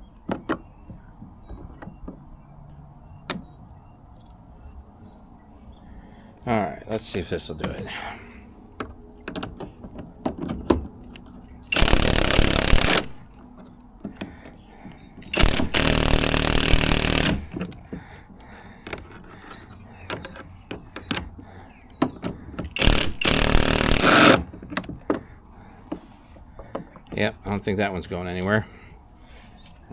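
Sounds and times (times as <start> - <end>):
tool handling clicks and knocks: 8.8 - 21.4
power driver tightening bolt: 11.7 - 13.3, 15.2 - 17.8, 22.2 - 24.9.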